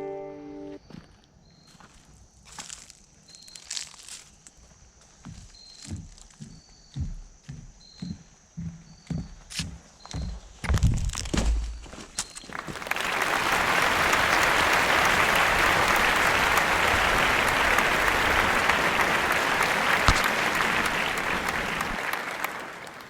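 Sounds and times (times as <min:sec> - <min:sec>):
applause: 0:12.4 - 0:23.0.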